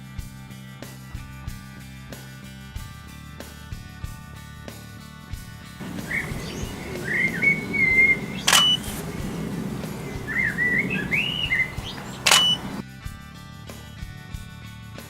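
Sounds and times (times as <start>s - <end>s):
birds chirping and singing: 5.8s - 12.8s
camera shutter: 8.4s - 9.0s, 12.2s - 12.6s.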